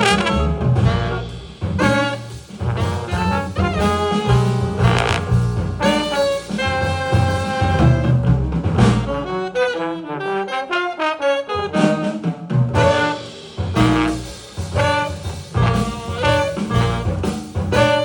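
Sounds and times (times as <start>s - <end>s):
low bass line: 0.0s - 9.3s, 13.7s - 18.0s
saxophones and brass: 0.0s - 18.0s.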